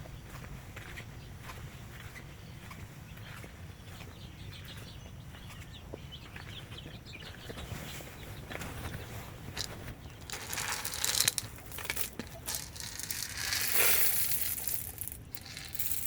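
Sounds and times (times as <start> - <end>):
chickens chirping: 1.5 - 10.3.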